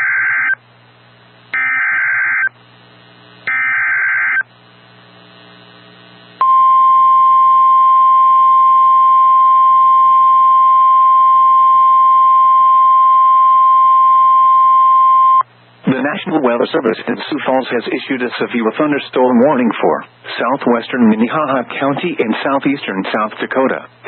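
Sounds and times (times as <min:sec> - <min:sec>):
steady warning alarm tone: 0:01.5 - 0:02.6, 0:03.5 - 0:04.4.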